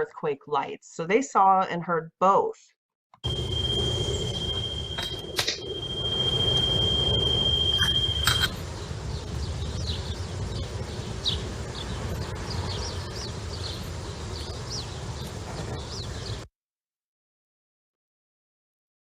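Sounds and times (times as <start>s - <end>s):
high-pitched tone: 3.2s - 8.7s
low outdoor rumble: 3.2s - 16.4s
small birds chirping: 7.8s - 16.4s.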